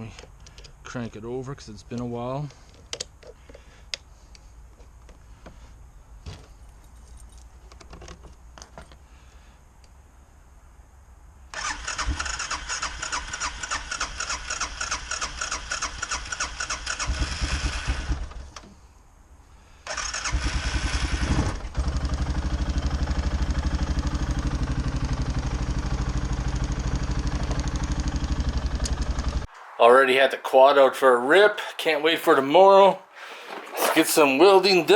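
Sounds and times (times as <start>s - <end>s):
engine cranking with electric starter: 11.5s - 18.7s, 19.8s - 25.8s
engine idling: 20.2s - 29.5s.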